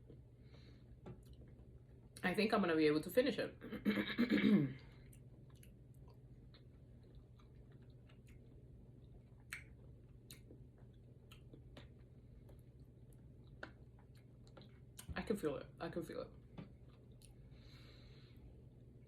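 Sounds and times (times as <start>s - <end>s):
person chewing food: 0.0s - 2.2s, 4.8s - 15.1s, 16.3s - 19.0s.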